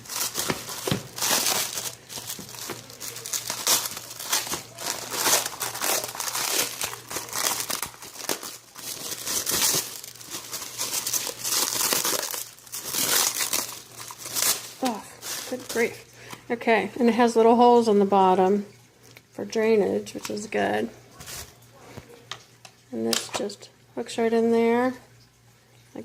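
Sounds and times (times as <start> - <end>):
packaging tearing: 0.0 - 16.0
packaging crinkling and rustling: 0.0 - 16.1, 21.2 - 21.6.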